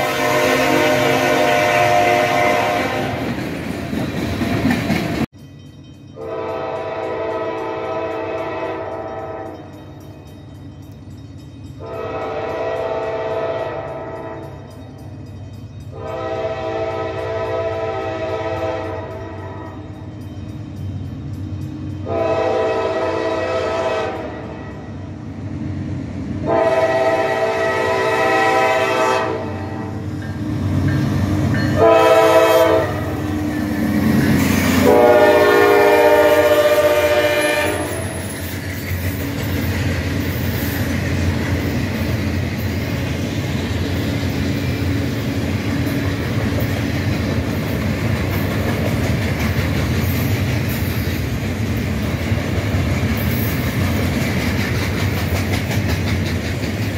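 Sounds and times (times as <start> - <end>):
locomotive air horn: 0.0 - 3.4, 6.2 - 9.7, 11.8 - 14.6, 16.0 - 19.8, 22.0 - 24.9, 26.4 - 30.0, 31.8 - 33.3, 34.7 - 38.3
train rumbling: 0.0 - 56.9
wheels clicking over rail joints: 3.1 - 6.2, 37.9 - 56.9.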